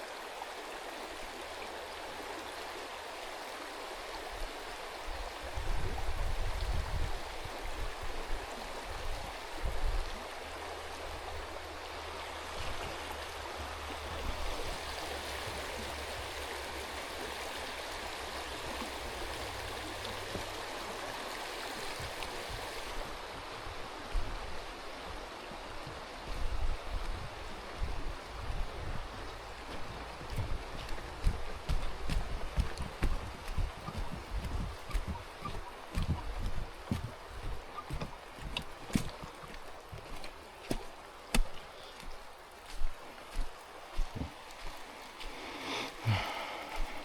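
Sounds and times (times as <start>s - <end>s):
river water rushing: 0.0s - 47.0s
low bumps: 25.8s - 40.3s.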